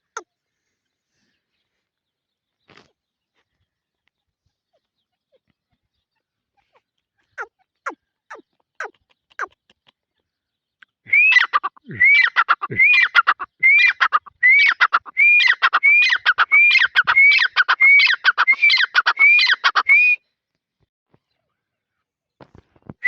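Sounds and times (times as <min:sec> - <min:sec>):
bird calling repeated phrases: 0:07.3 - 0:09.8, 0:10.8 - 0:20.3.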